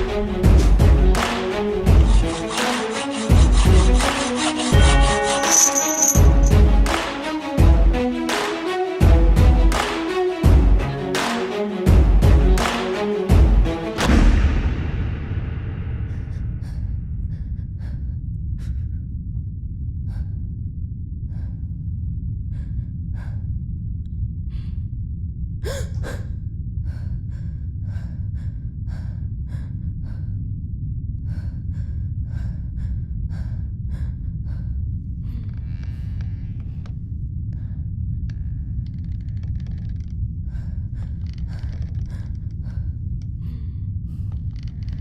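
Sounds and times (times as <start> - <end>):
low rumble: 13.4 - 45.0
person panting: 16.1 - 19.1, 21.3 - 21.9, 25.6 - 30.5, 31.2 - 35.7, 40.4 - 45.0.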